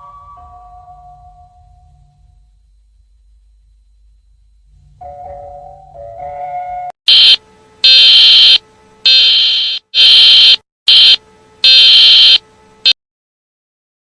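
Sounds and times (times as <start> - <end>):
high-pitched alarm blasts: 7.1 - 12.4.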